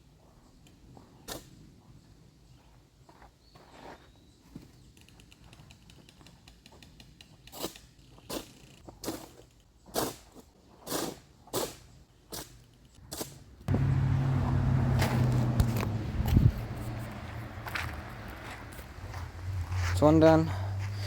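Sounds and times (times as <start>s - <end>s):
shovel scraping soil: 15.0s - 20.0s.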